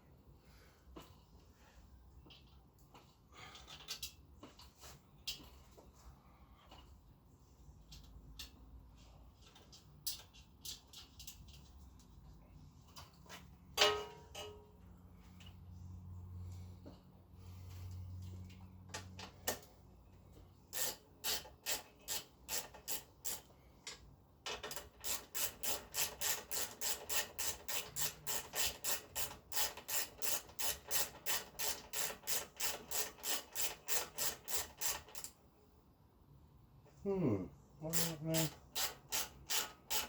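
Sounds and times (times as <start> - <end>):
hand tool rasping strokes: 37.9 - 40.0.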